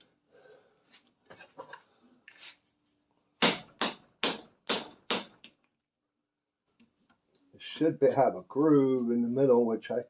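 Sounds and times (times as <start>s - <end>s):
hammer striking steel punch: 3.4s - 5.5s.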